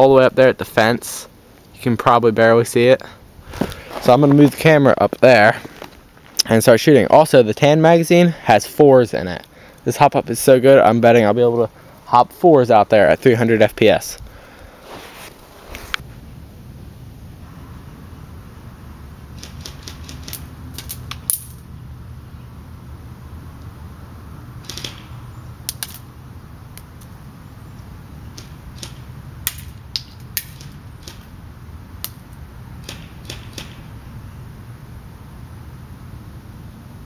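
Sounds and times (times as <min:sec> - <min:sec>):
low wind rumble: 0:00.0 - 0:37.0.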